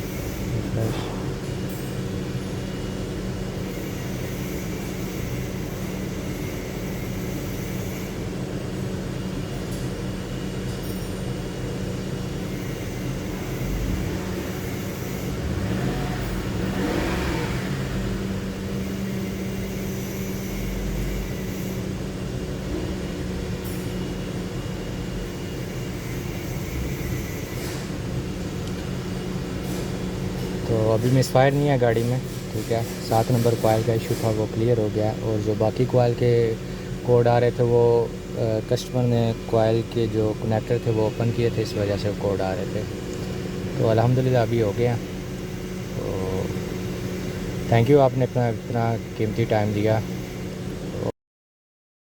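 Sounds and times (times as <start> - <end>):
car engine idling and revving: 13.1 - 34.8, 40.1 - 51.1.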